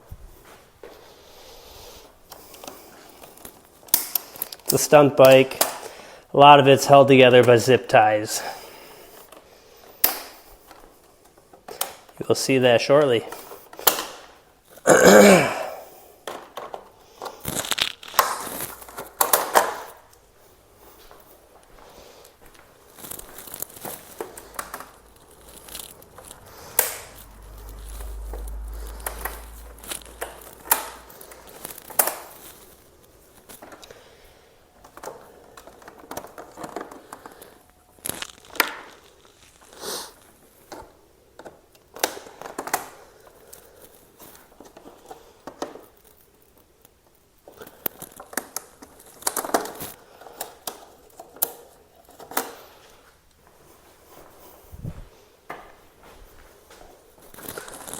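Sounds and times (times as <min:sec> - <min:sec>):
plastic panels clicking and snapping: 0:03.9 - 0:05.9, 0:10.0 - 0:10.4, 0:18.0 - 0:20.0
plastic crinkling: 0:16.4 - 0:20.6, 0:21.3 - 0:34.2, 0:34.8 - 0:40.8, 0:57.0 - 0:57.9
low rumble: 0:25.0 - 0:31.6.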